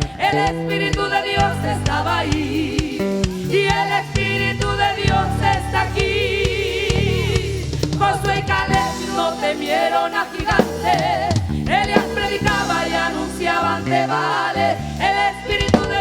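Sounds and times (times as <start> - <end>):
bass guitar: 0.0 - 16.0
choir singing gospel song: 0.0 - 16.0
drums: 0.0 - 16.0.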